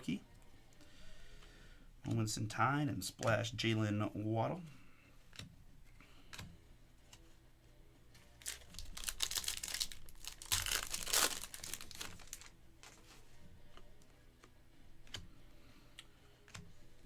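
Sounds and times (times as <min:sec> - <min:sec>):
foil wrapper tearing and crinkling: 0:08.4 - 0:12.5.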